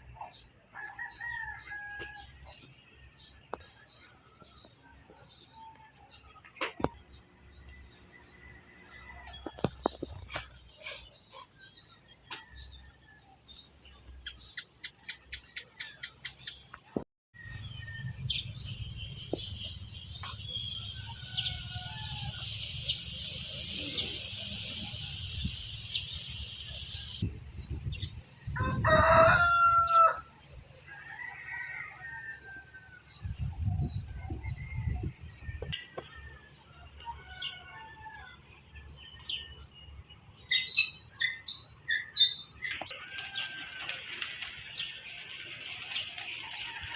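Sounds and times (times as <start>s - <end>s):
rooster crowing: 0.8s - 2.4s, 20.8s - 22.6s, 28.5s - 30.3s, 30.9s - 32.8s, 36.0s - 38.4s, 42.9s - 44.3s
small birds chirping: 17.8s - 28.5s.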